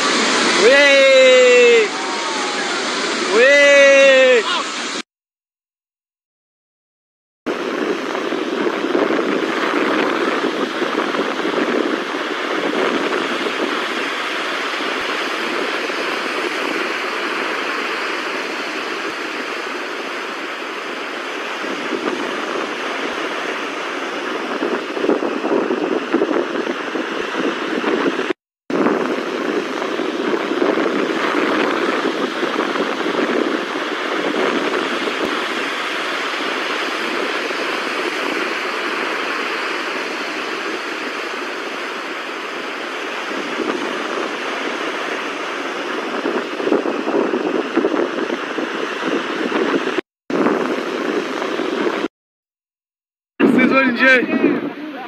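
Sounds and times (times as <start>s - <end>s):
floodwater rushing: 0.0s - 5.0s, 29.2s - 49.4s.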